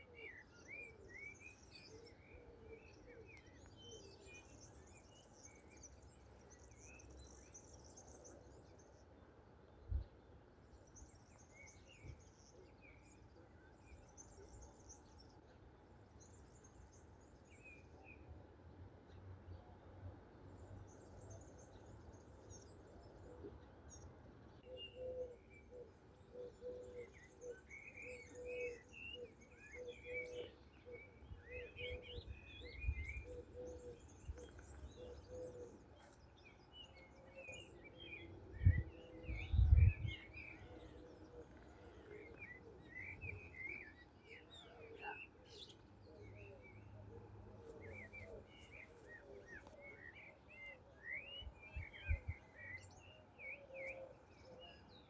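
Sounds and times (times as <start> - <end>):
songbirds chirping: 0.0 - 55.0
dove cooing: 24.9 - 32.2, 32.8 - 35.8.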